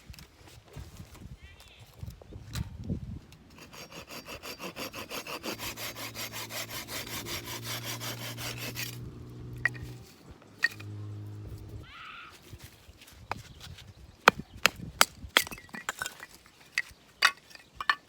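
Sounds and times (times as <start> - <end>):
hand saw cutting wood: 3.5 - 11.8
steady low hum: 5.4 - 11.9.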